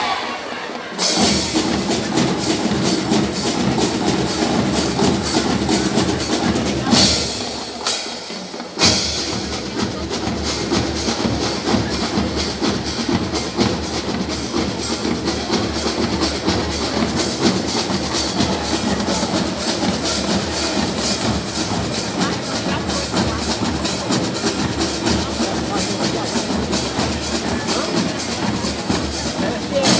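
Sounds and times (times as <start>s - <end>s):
heavy percussion: 0.0s - 29.9s
marching band playing: 0.0s - 29.9s.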